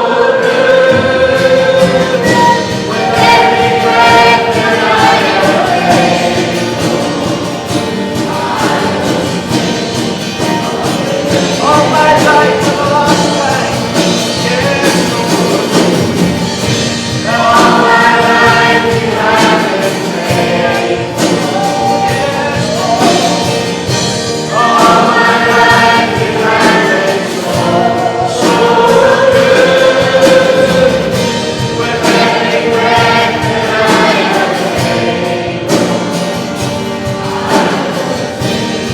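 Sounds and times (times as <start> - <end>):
instrumental accompaniment: 0.0 - 38.9
people singing a hymn: 0.0 - 38.9.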